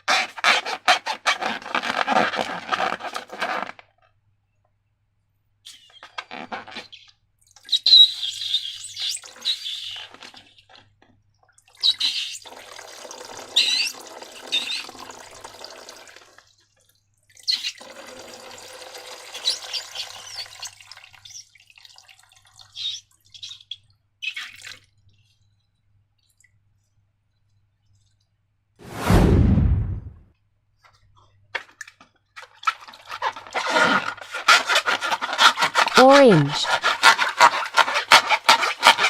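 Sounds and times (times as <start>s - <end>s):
balloon squeaks: 0.0s - 3.7s, 5.7s - 7.1s, 33.1s - 39.0s
slime squelching: 32.4s - 39.0s.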